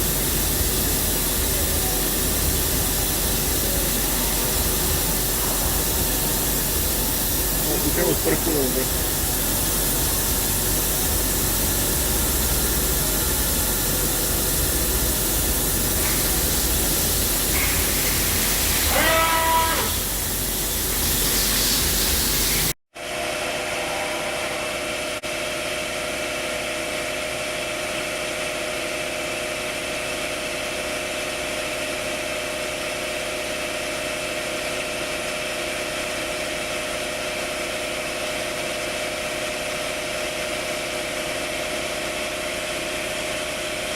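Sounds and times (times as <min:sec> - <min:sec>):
low machine hum: 0:00.0 - 0:21.6, 0:23.0 - 0:28.4
grinding machine hiss: 0:00.0 - 0:26.4
machine hum with held tones: 0:00.0 - 0:32.5
rising whine: 0:23.0 - 0:25.7.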